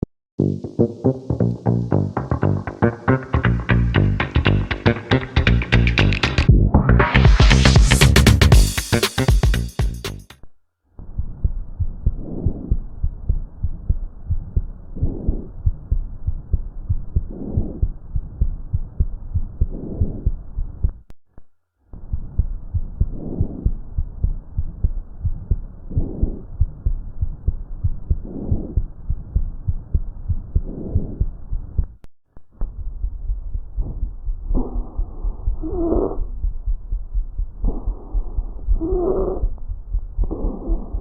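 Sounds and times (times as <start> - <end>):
rapid low thumping: 1.5 - 10.1, 11.2 - 21.0, 22.0 - 32.0, 32.6 - 41.0
breath sounds through stethoscope: 17.0 - 18.3, 22.4 - 31.4, 32.8 - 41.0.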